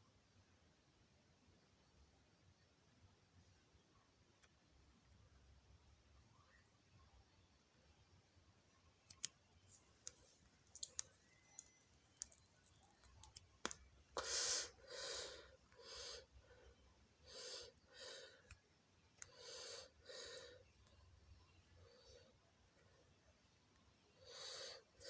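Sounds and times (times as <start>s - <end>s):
faint sharp clicks: 9.0s - 13.9s, 18.4s - 19.4s
short breathy hisses: 14.2s - 16.3s.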